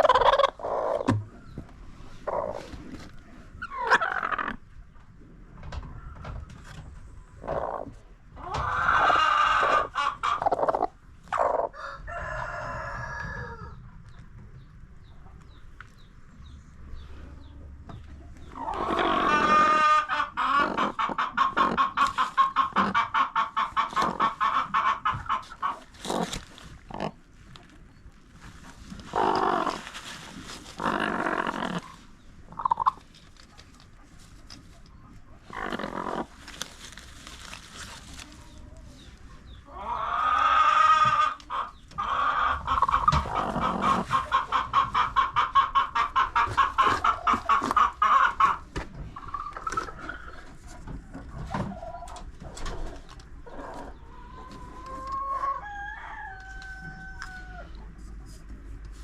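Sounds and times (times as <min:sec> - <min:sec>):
chickens clucking: 0:00.0 - 0:59.0
rooster crowing: 0:11.7 - 0:13.7, 0:55.3 - 0:57.7.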